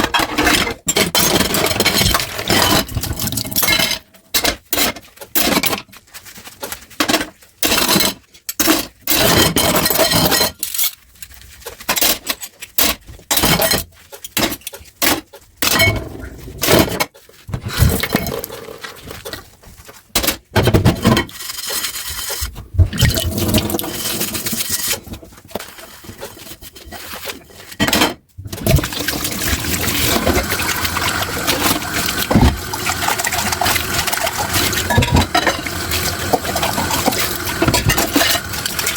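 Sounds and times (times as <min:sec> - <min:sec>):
dishes and glass clinking: 0:15.6 - 0:17.0, 0:33.2 - 0:38.9
water splashing in sink: 0:15.7 - 0:16.9, 0:17.5 - 0:19.3, 0:21.6 - 0:25.2, 0:28.4 - 0:38.9
tap running: 0:28.5 - 0:38.9.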